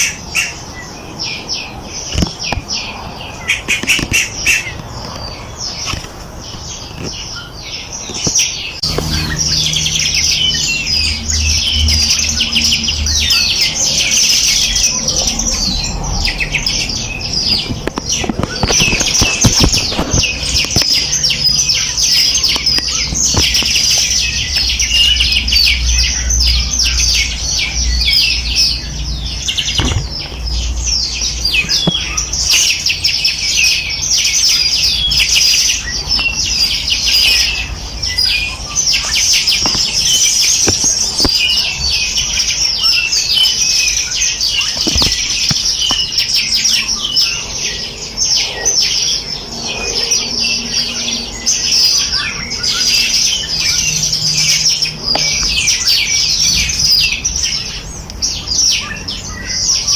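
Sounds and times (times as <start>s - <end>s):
songbirds chirping: 0.0s - 59.9s.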